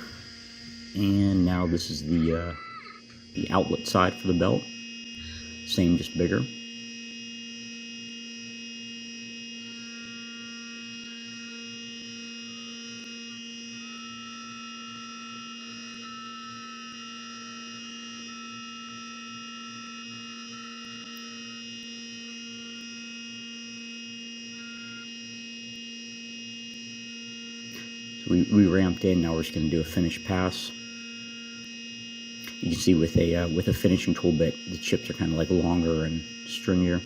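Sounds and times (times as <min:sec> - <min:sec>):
high cutting tone: 0:00.0 - 0:07.9, 0:27.3 - 0:37.0
milling machine hum: 0:00.0 - 0:37.0.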